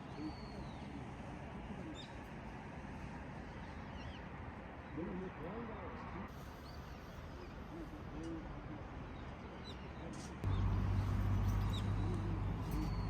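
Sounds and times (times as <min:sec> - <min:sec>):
small birds chirping: 0:09.1 - 0:13.0
low engine hum: 0:10.4 - 0:13.0.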